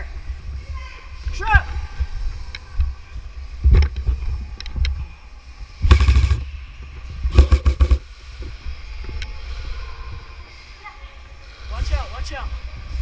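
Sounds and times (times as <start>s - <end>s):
wind noise: 0.0s - 13.0s
rustling burst: 5.8s - 6.7s, 7.3s - 8.1s
handling noise on microphone: 5.8s - 8.6s
thumps and clicks: 7.3s - 8.0s.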